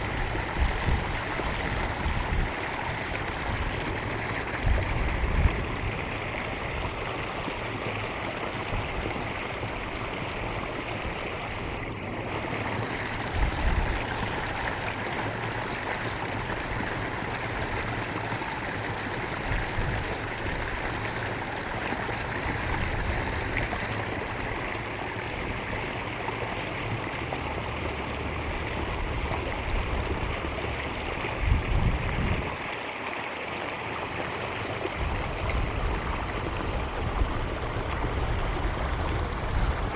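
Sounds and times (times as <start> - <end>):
water babbling in a channel: 0.0 - 39.9.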